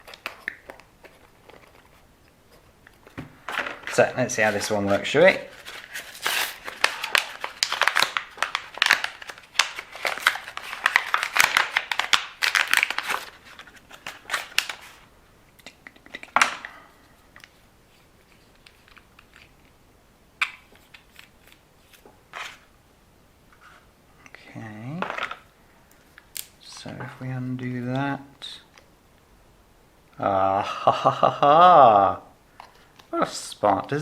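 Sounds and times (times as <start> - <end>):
plastic packaging crinkling: 0.0 - 16.7, 17.3 - 19.8.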